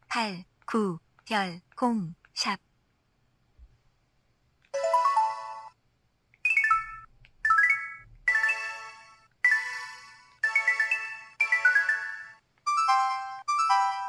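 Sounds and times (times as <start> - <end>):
electronic phone chimes: 6.5 - 14.0.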